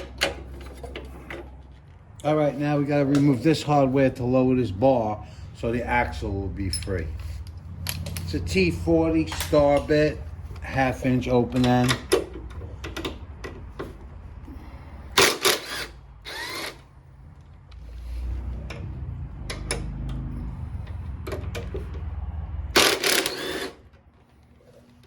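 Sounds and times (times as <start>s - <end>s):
metal tools clanking: 5.7s - 14.0s
power driver running: 15.2s - 16.9s, 22.7s - 23.9s.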